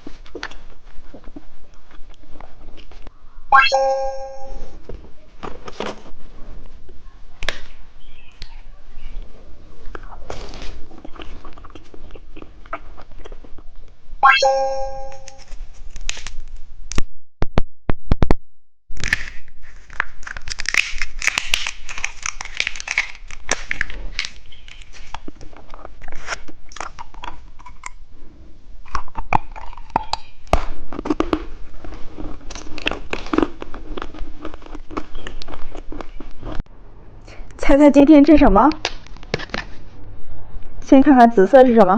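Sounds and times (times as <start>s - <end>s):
brief pitched tone: 3.5s - 4.8s, 14.2s - 15.4s
plastic packaging crinkling: 19.0s - 26.8s.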